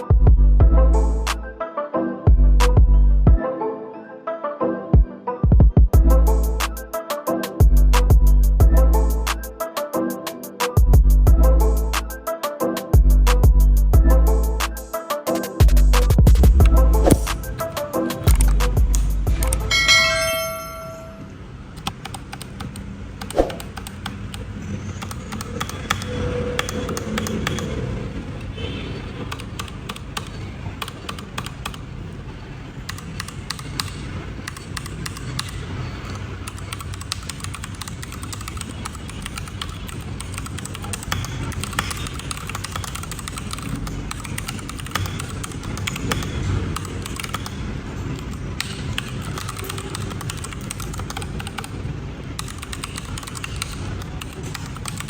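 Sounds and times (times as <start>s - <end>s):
mechanical keyboard typing: 15.3s - 19.8s, 21.8s - 27.8s, 29.2s - 31.9s, 32.8s - 55.0s.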